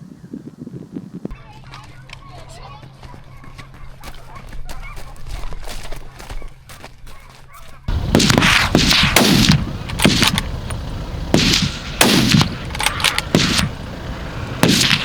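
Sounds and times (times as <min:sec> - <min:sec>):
gunshots with echo: 0:07.9 - 0:13.9, 0:14.6 - 0:15.0.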